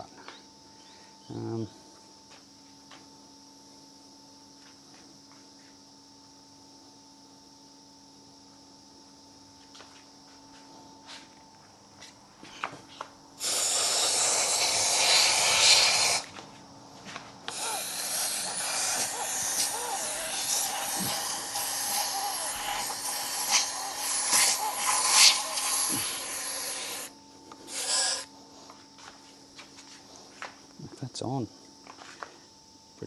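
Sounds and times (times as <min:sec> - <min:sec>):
compressed air hissing from blow gun: 0:13.4 - 0:16.3, 0:17.5 - 0:28.3.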